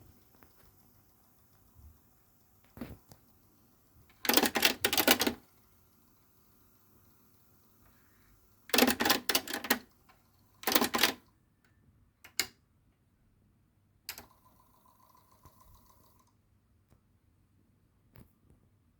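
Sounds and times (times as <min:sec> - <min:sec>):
faint steady hum: 0:00.0 - 0:18.9
cassette deck mechanism clicking: 0:08.7 - 0:09.8.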